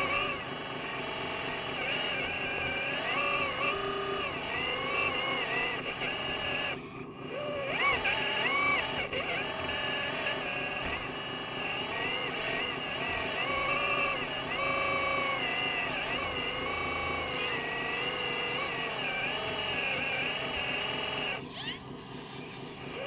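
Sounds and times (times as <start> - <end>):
toy motors whining: 0.0 - 23.0.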